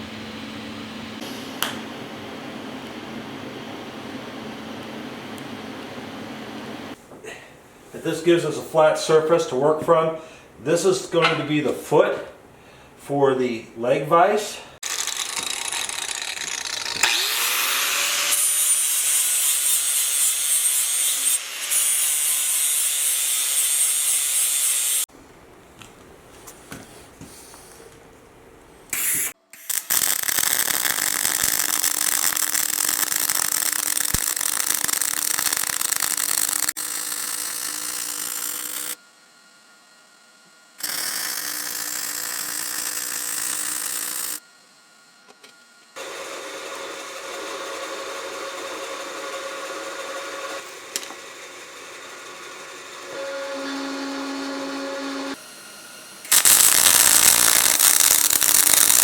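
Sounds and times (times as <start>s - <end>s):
power tool working steel: 14.8s - 25.1s, 28.9s - 39.0s, 40.8s - 44.4s, 46.0s - 59.0s.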